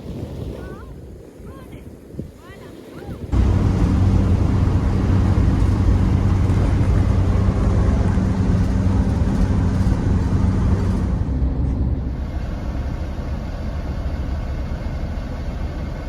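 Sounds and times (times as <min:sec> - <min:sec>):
road noise: 0:03.4 - 0:16.0
van engine drone: 0:03.4 - 0:16.0.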